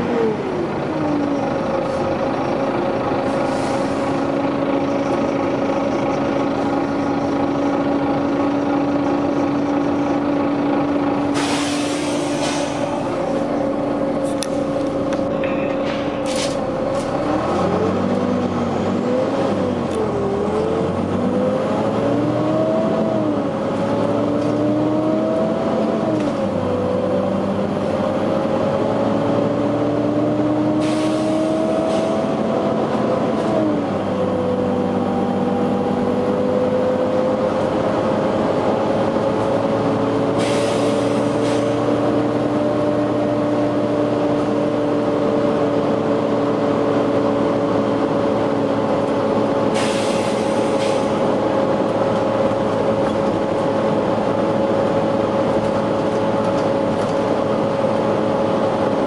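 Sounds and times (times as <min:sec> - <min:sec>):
bus engine running: 0:00.0 - 0:59.0
air brake hisses: 0:03.3 - 0:04.1, 0:11.3 - 0:13.0, 0:30.8 - 0:32.2, 0:40.4 - 0:41.8, 0:49.7 - 0:51.2.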